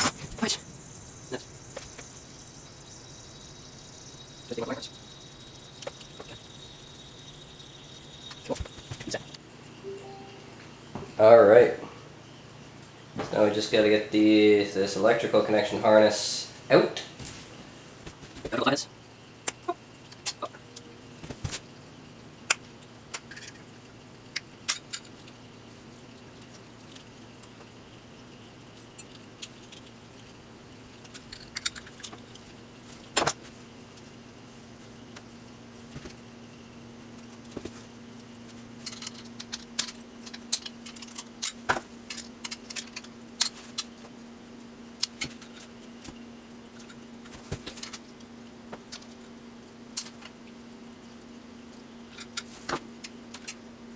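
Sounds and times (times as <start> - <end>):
steady low hum: 0.0 - 24.4.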